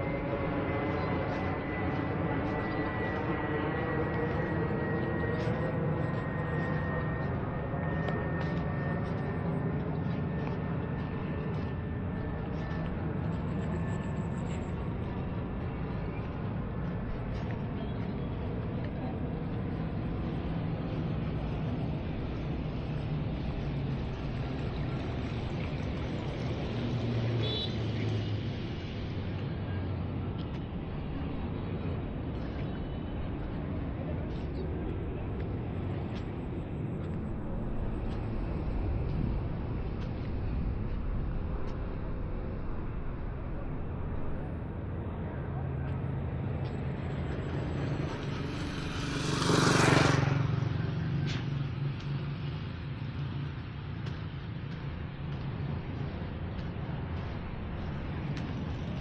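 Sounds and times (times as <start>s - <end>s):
engine running with low hum: 0.0s - 59.0s
outdoor background noise: 0.0s - 59.0s
motor vehicle passing by: 45.7s - 59.0s.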